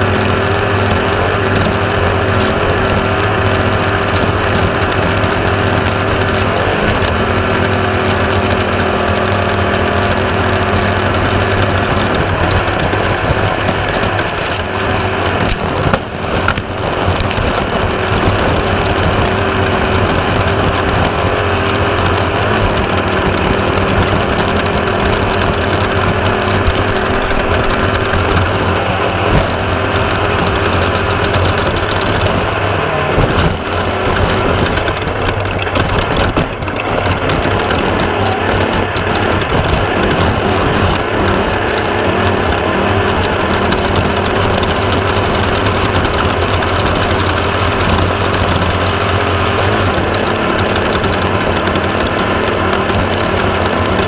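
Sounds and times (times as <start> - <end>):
chassis and terrain noise: 0.0 - 54.0
race car engine running hard: 0.0 - 54.0.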